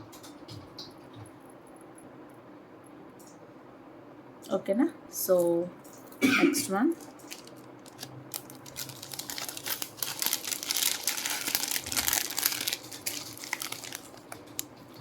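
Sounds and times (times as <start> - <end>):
packaging crinkling: 6.9 - 15.0.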